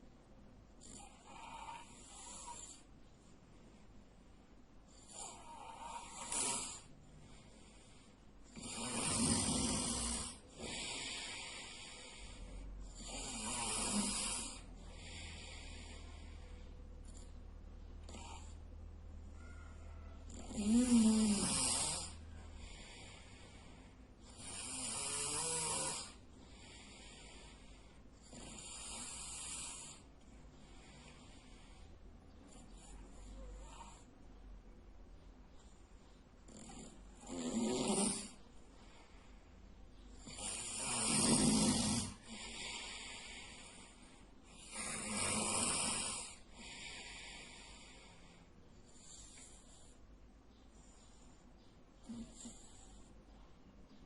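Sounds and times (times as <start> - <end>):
quiet breathing: 0.0 - 54.0
man snoring: 0.8 - 2.9, 5.0 - 6.9, 8.5 - 16.4, 18.0 - 18.6, 20.3 - 23.6, 24.2 - 30.1, 36.5 - 38.4, 40.2 - 48.2.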